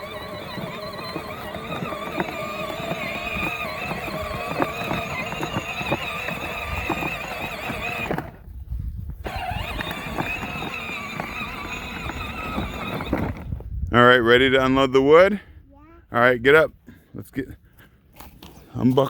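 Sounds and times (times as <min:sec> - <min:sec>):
electric motor whine: 0:00.0 - 0:08.4, 0:09.2 - 0:13.6
wheels crunching over ground: 0:00.0 - 0:13.9.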